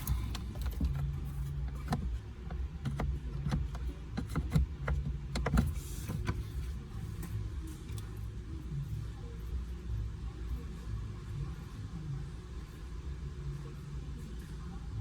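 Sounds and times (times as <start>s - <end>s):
sharp clicks and knocks: 0.0s - 6.4s
vehicle engine humming: 0.0s - 10.6s.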